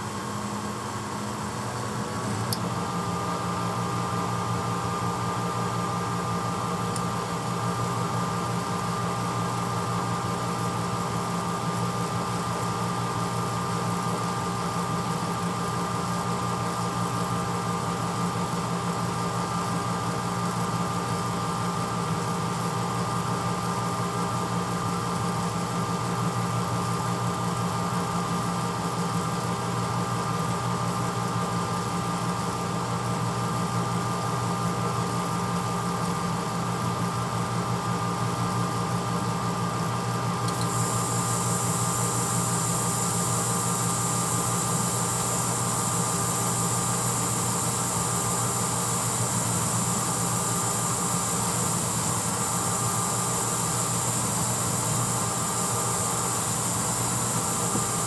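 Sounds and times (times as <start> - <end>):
dishwasher motor hum: 0.0 - 58.0
high hiss: 40.5 - 58.0.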